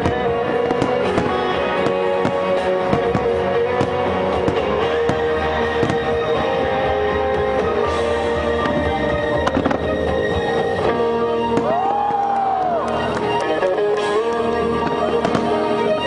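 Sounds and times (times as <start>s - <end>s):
fireworks bangs: 0.0s - 10.1s, 14.0s - 15.8s
music with sustained tones: 0.0s - 16.0s.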